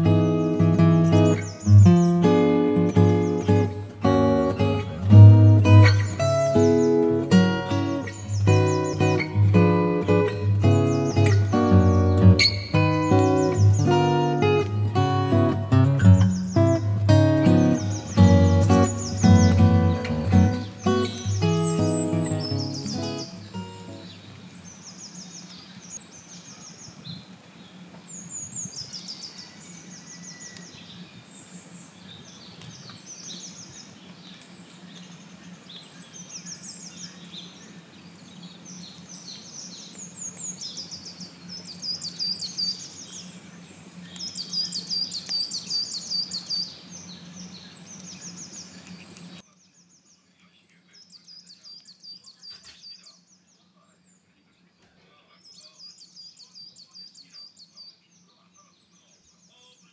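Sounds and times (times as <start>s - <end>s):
songbirds singing: 0.0s - 59.9s
steady background hiss: 0.0s - 59.9s.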